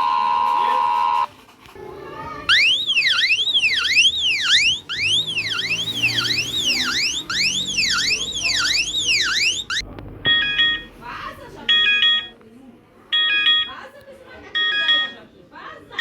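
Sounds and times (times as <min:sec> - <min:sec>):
electronic alarm siren: 0:00.0 - 0:01.3, 0:02.5 - 0:09.8.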